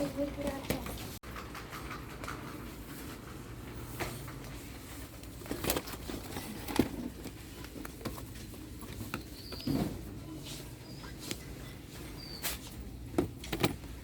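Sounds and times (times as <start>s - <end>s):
shop background hum: 0.0s - 14.0s
items knocking and clattering: 5.3s - 10.2s, 13.1s - 14.0s.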